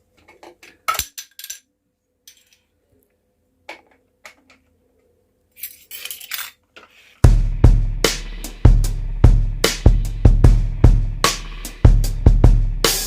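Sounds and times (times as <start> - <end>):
kitchenware clinking: 5.6 - 6.6.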